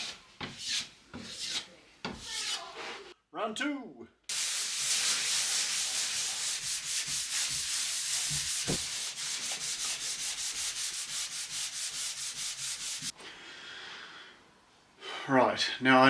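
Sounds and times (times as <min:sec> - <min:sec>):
hand tool scraping a wall: 0:00.0 - 0:02.8, 0:04.6 - 0:13.1.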